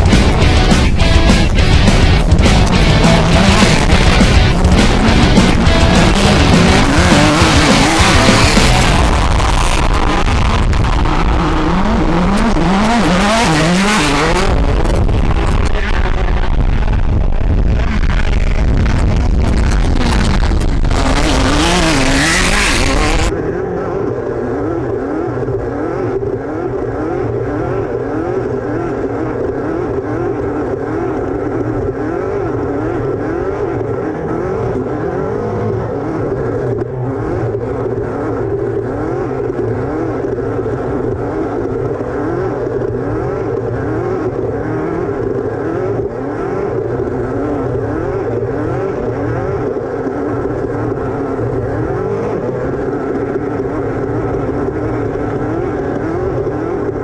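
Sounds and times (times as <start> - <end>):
music: 0.0 - 8.9
race car engine revving: 0.0 - 57.0.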